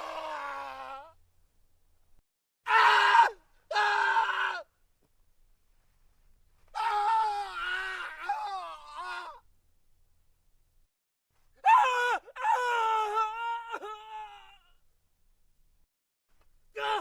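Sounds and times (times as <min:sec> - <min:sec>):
man screaming: 0:02.7 - 0:04.7, 0:06.8 - 0:09.4, 0:11.6 - 0:14.7, 0:16.8 - 0:17.0.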